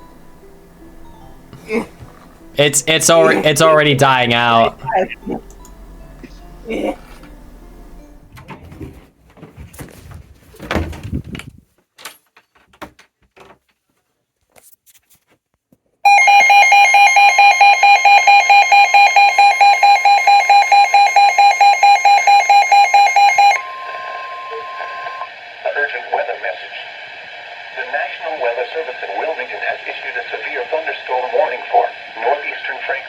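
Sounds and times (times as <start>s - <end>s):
steady warning tone: 0.0s - 8.4s, 16.1s - 30.4s
rapid alarm beeping: 2.4s - 8.2s, 16.1s - 25.4s.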